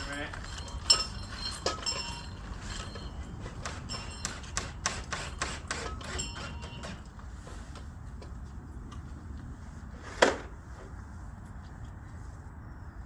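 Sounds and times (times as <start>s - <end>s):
hand tools knocking and tapping: 0.3s - 7.1s.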